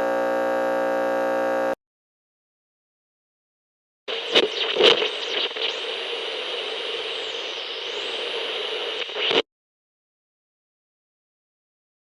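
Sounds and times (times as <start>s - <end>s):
radio whistling squeals: 4.1s - 9.4s
radio static hiss: 4.1s - 9.5s
static crackles: 4.1s - 9.5s.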